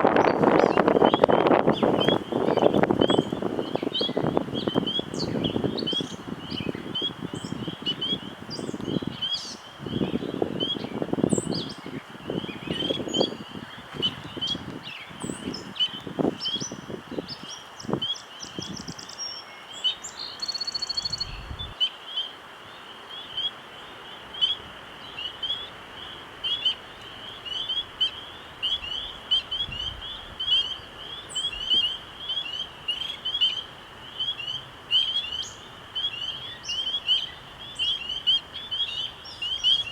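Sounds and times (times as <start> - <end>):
wind gusts: 0.0 - 39.9
chorus of high chirps: 0.2 - 21.8.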